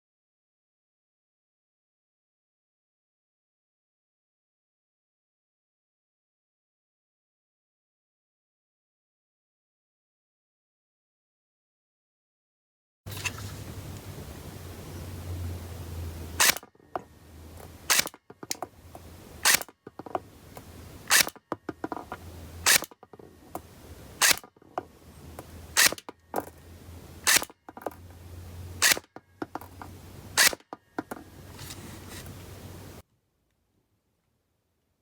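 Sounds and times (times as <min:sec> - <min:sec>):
low steady hum: 0:13.1 - 0:35.0
airsoft gun shots: 0:17.9 - 0:18.2, 0:19.4 - 0:19.7, 0:22.6 - 0:23.0, 0:24.2 - 0:24.5, 0:25.8 - 0:26.0, 0:28.8 - 0:29.1, 0:30.4 - 0:30.6.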